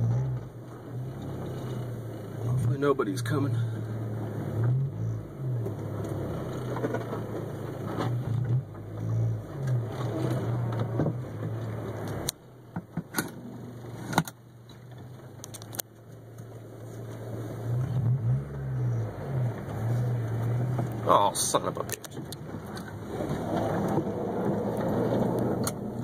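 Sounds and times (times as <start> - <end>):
car engine running: 0.0 - 26.0
sharp clicks and knocks: 14.0 - 16.5, 21.8 - 26.0.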